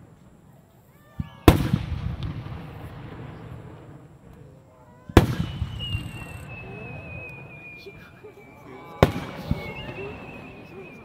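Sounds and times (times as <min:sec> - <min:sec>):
firework booms with rumbling echo: 0:01.2 - 0:07.8, 0:08.9 - 0:11.0.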